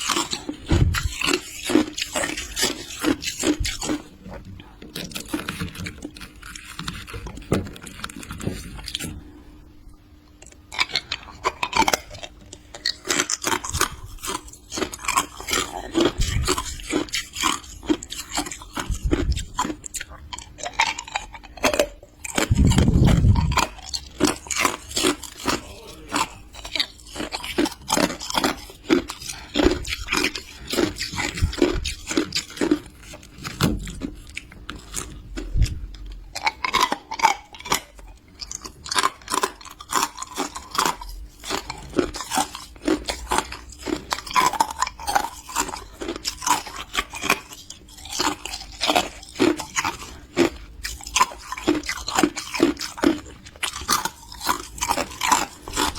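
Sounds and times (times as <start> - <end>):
person crunching ice: 0.0 - 4.2, 4.9 - 9.0, 10.5 - 35.7, 36.4 - 55.9
deep thuds: 0.7 - 1.1.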